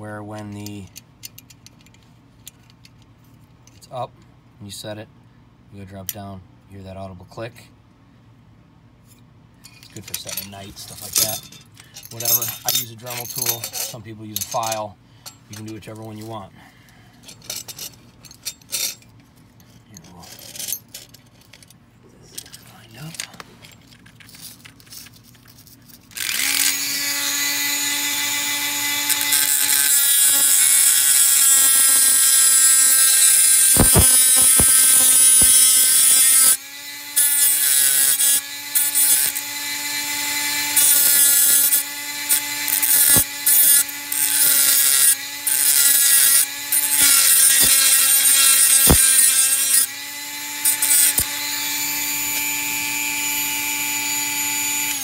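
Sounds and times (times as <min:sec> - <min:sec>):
rotary tool grinding metal: 0:09.8 - 0:16.4, 0:17.2 - 0:21.7, 0:23.9 - 0:55.0.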